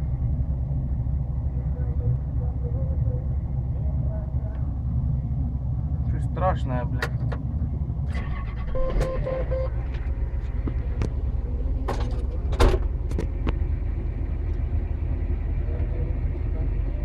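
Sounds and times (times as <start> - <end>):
vehicle engine running: 0.0 - 17.0.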